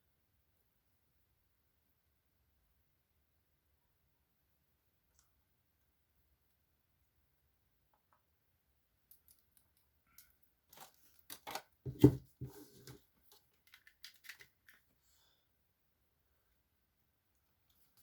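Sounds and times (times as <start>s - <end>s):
packaging clicks and rustles: 9.1s - 12.1s, 12.8s - 14.9s
thump: 11.9s - 12.6s.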